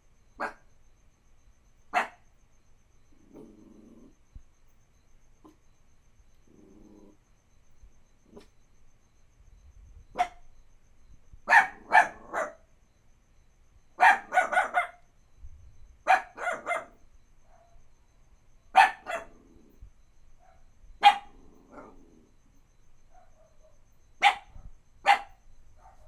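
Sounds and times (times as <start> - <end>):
puppy barking: 1.9 - 2.2, 10.2 - 10.4, 11.5 - 12.6, 14.0 - 15.0, 16.1 - 17.7, 18.8 - 19.4, 20.4 - 22.0, 23.1 - 26.0.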